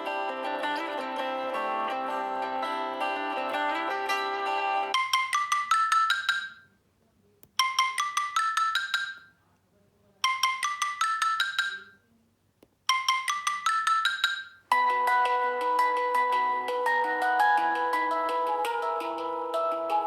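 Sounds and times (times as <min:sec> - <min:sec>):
ringtone with held notes: 0:00.0 - 0:06.8, 0:07.6 - 0:09.4, 0:10.2 - 0:12.1, 0:12.9 - 0:20.0
phone ringtone struck notes: 0:04.9 - 0:06.7, 0:07.6 - 0:09.4, 0:10.2 - 0:12.0, 0:12.9 - 0:19.2.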